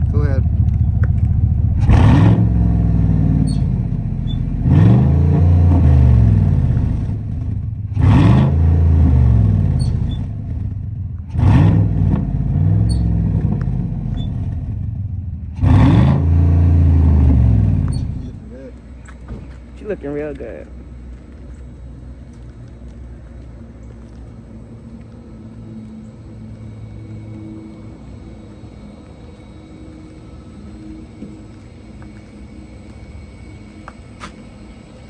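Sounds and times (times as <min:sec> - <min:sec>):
car engine revving: 0:00.0 - 0:18.8.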